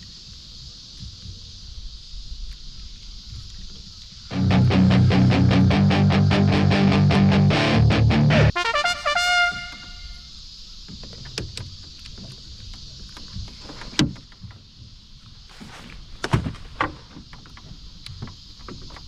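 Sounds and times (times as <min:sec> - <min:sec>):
low rumble: 0:04.3 - 0:08.6
knocks and clatters on boat: 0:10.8 - 0:15.2, 0:16.2 - 0:19.0.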